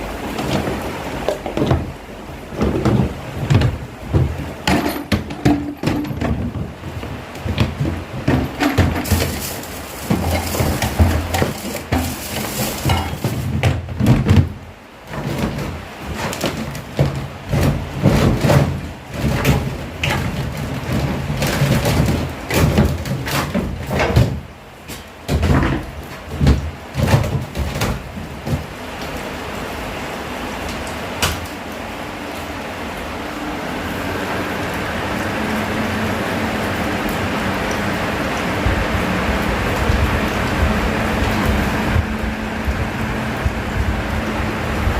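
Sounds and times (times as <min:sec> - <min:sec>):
electric fan motor humming: 0:00.0 - 0:22.5, 0:28.0 - 0:44.9
knocking and rattling: 0:00.2 - 0:28.8.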